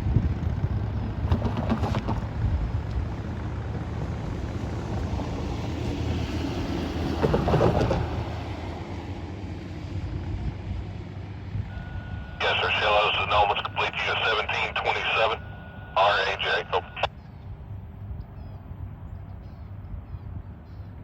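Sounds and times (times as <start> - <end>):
train rumbling: 4.7 - 9.0
train clatter: 6.9 - 8.5.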